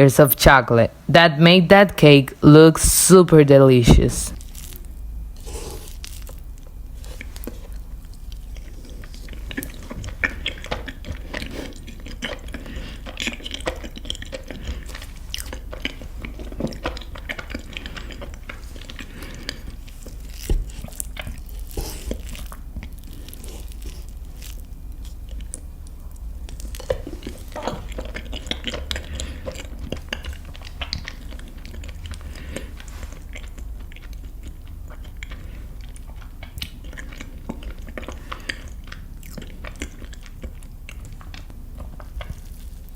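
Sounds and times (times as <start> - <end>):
person chewing cake: 4.3 - 42.9.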